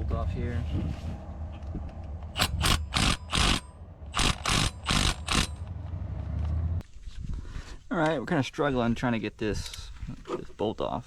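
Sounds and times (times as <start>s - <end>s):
low hum: 0.0s - 6.8s
ratchet rasping strokes: 2.4s - 5.6s.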